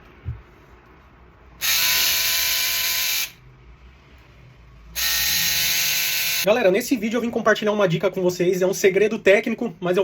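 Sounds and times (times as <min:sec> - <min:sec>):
electric shaver buzzing: 0:01.6 - 0:03.4, 0:05.0 - 0:06.5.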